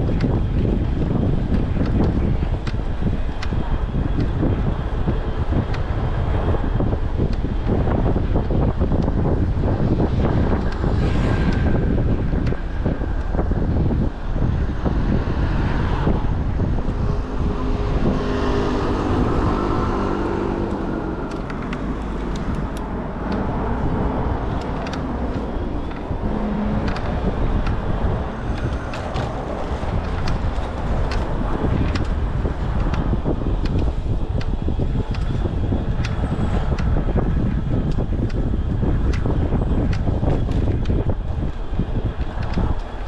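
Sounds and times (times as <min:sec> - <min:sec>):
city street traffic: 0:00.0 - 0:43.0
wind rumbling on microphone: 0:00.0 - 0:43.0
vehicle engine passing close: 0:13.6 - 0:36.7.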